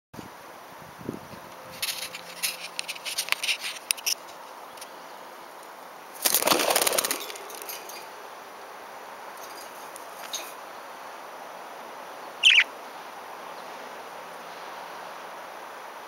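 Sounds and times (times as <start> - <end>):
wings flapping: 6.2 - 8.0
parakeets chirping and clicking: 12.4 - 12.7.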